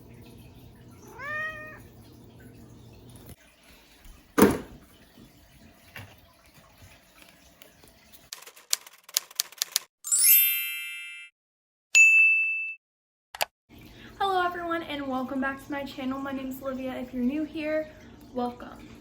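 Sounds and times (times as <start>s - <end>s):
cat meowing: 1.0s - 1.9s.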